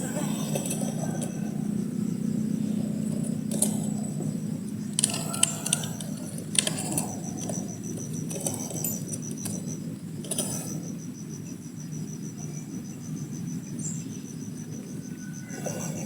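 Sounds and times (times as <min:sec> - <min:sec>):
rustling vegetation: 0:00.0 - 0:10.8
insect trilling: 0:00.0 - 0:16.0
clinking: 0:04.9 - 0:10.6.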